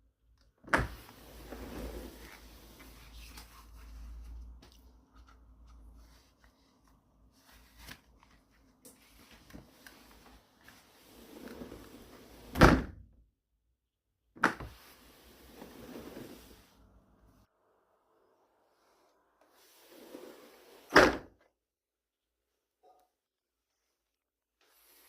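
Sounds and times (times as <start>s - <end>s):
sliding door shutting with a thunk: 0.7s - 2.2s, 11.0s - 13.0s, 20.7s - 21.3s.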